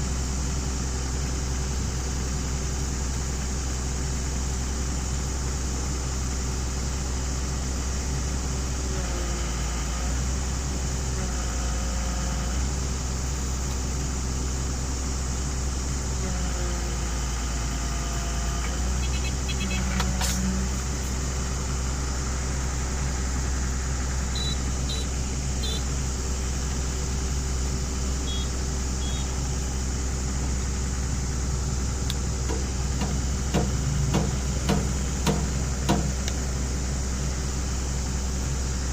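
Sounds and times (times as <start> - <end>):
excavator diesel engine running: 0.0 - 38.9
hydraulic whine: 8.8 - 38.9
sharp knocks: 32.5 - 36.2.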